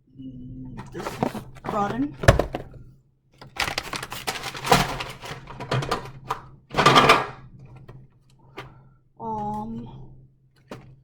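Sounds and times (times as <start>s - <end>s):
containers clattering: 0.9s - 6.2s
food packaging crinkling: 1.0s - 2.8s, 3.5s - 5.5s.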